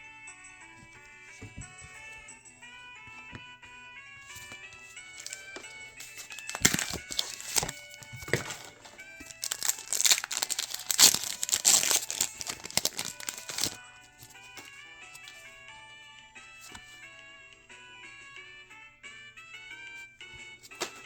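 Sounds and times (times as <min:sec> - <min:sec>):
light background music: 0:00.0 - 0:21.0
foil wrapper tearing and crinkling: 0:05.1 - 0:13.8.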